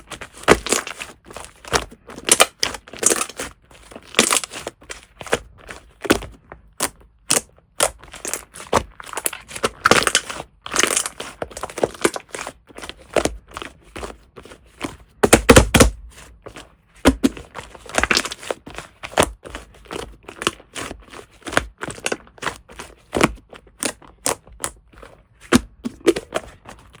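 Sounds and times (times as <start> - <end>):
slime crackling and popping: 0.4 - 1.0, 1.7 - 4.7, 6.8 - 12.5.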